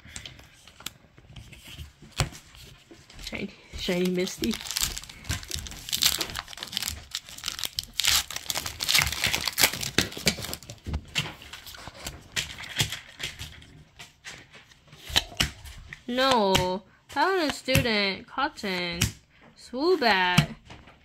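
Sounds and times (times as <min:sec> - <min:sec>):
foil wrapper crinkling and tearing: 0:03.8 - 0:13.6.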